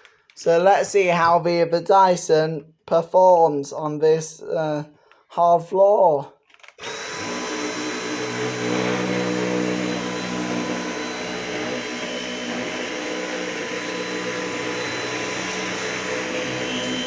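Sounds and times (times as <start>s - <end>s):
vacuum cleaner running: 6.8s - 17.0s.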